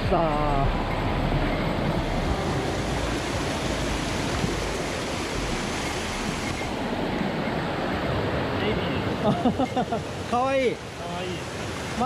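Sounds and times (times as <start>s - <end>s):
wind rumble on microphone: 0.0s - 9.4s
stream rushing over rocks: 0.0s - 12.0s.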